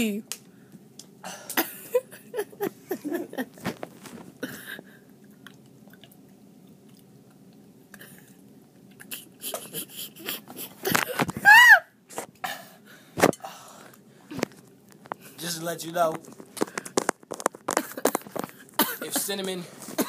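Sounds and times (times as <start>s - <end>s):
person chewing and smacking: 5.2s - 8.0s.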